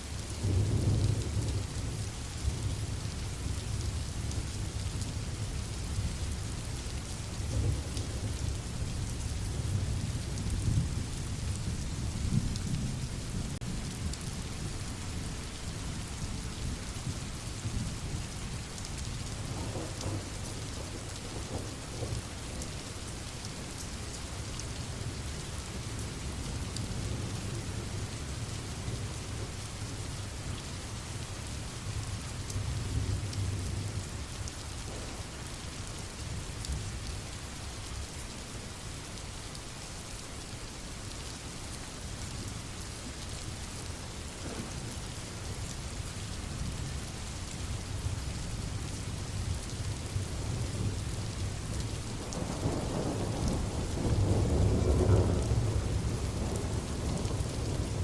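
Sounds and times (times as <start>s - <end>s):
steady rain: 0.0s - 58.0s
low thunder rumbling: 19.3s - 22.8s, 34.8s - 35.5s, 49.4s - 58.0s.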